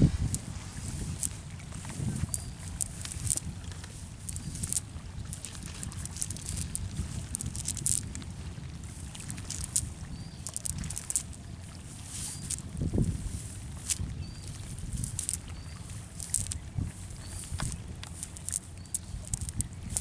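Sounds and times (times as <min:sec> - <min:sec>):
low steady rumble: 0:00.0 - 0:18.0.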